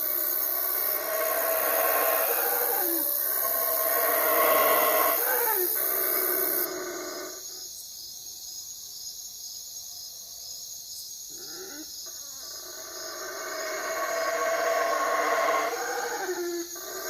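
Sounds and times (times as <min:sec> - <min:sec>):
dog howling: 0:01.0 - 0:07.0.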